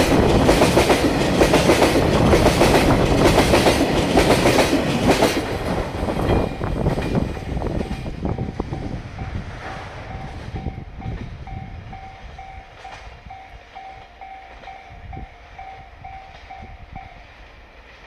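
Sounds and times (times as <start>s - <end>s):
freight train clattering over rail joints: 0.0s - 18.0s
level crossing warning bell: 6.0s - 17.4s.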